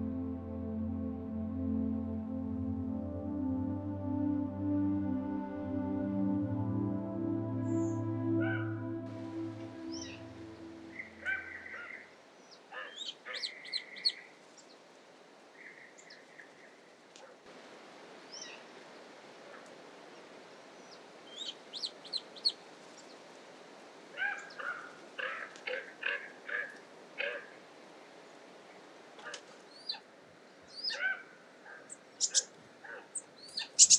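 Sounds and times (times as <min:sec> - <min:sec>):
soft music: 0:00.0 - 0:12.0
wild birds calling: 0:09.6 - 0:14.3, 0:24.2 - 0:27.6, 0:29.2 - 0:33.9.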